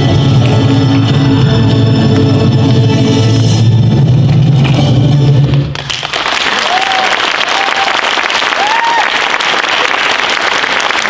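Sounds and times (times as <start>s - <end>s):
backing music: 0.0s - 6.2s
audience applauding: 5.5s - 11.0s.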